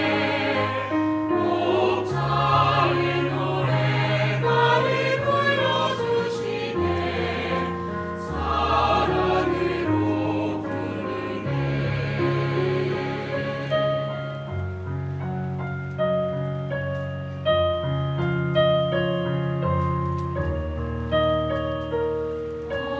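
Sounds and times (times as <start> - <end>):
choir singing a slow hymn: 0.0 - 14.7, 22.6 - 22.9
piano playing low chords: 0.0 - 22.9.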